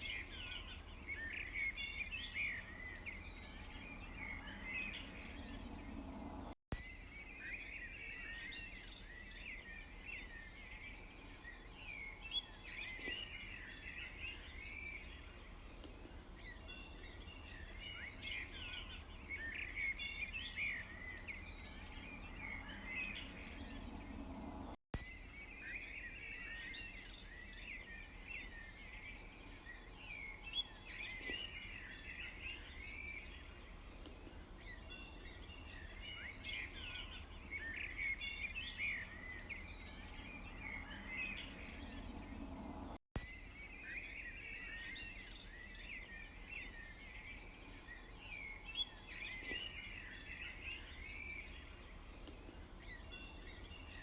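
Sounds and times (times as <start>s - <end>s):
small birds chirping: 0.0s - 54.0s
low steady rumble: 3.2s - 6.5s, 21.1s - 24.8s, 38.8s - 43.0s.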